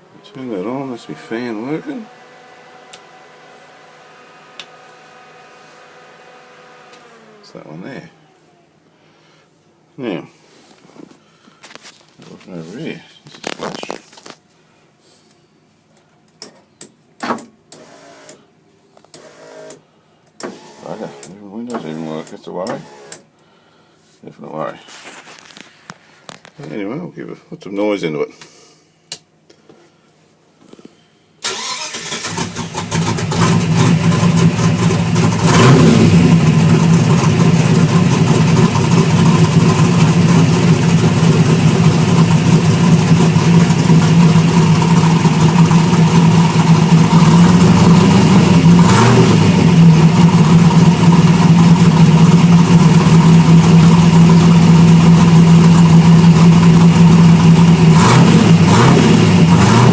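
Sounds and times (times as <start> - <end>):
engine revving: 0.0 - 8.3, 31.5 - 59.9
car engine cranking and running: 31.4 - 59.9.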